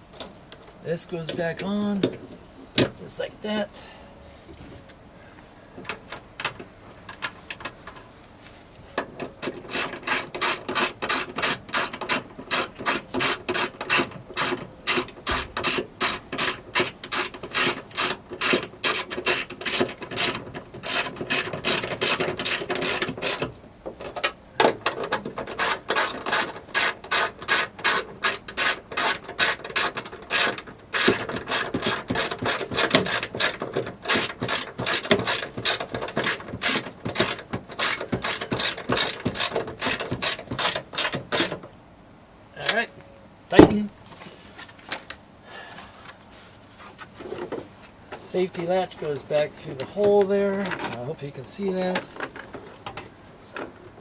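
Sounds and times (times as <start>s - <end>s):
hand ratchet clicking: 9.7s - 23.5s, 24.8s - 41.6s.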